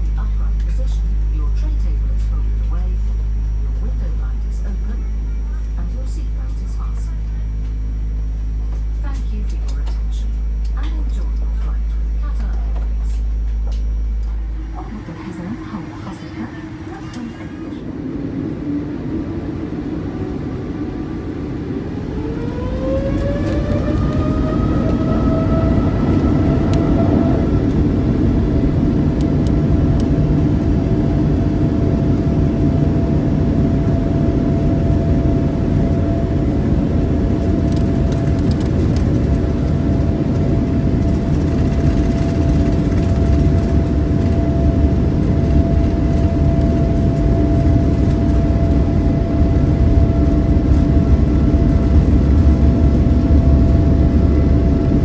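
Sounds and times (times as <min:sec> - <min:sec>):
jet engines spooling up: 0:14.2 - 0:55.0.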